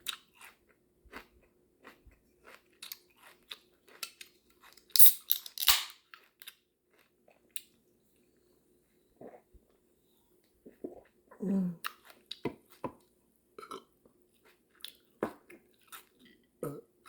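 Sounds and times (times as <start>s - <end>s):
person chewing food: 0.0s - 4.9s, 6.1s - 8.4s, 11.8s - 16.5s.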